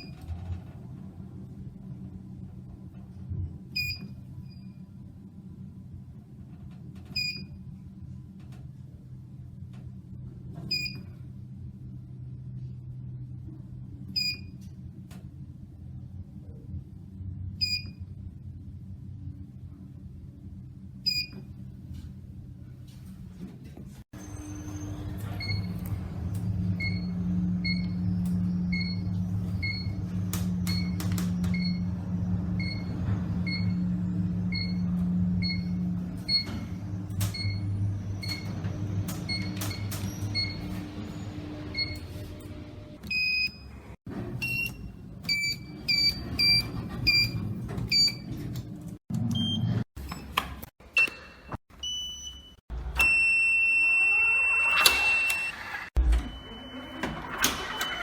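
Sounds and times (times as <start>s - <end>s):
elevator beeping: 0.0s - 1.5s, 3.7s - 4.9s, 7.0s - 7.7s, 10.7s - 11.2s, 14.1s - 14.6s, 21.0s - 21.5s, 24.2s - 58.0s
low hum: 24.2s - 44.0s
elevator chimes at different pitches: 51.0s - 58.0s.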